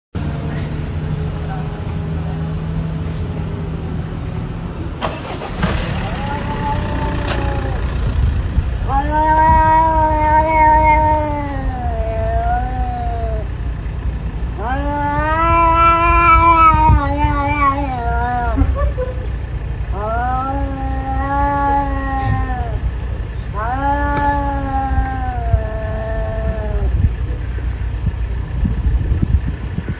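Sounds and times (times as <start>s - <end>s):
low rumble: 0.2s - 29.9s
cat yowling: 5.2s - 8.0s, 8.8s - 13.5s, 14.6s - 18.8s, 19.9s - 22.8s, 23.5s - 26.9s.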